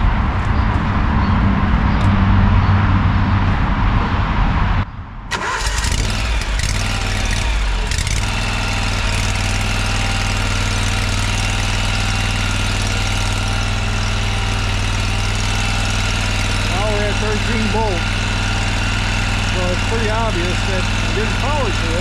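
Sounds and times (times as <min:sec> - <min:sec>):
mower engine starting and idling: 0:05.3 - 0:22.0.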